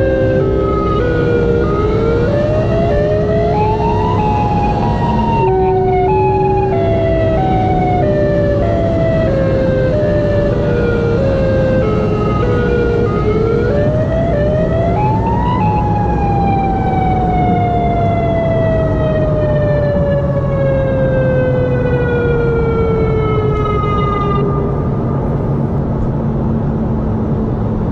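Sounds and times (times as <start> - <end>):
low rumble: 23.1 - 27.4.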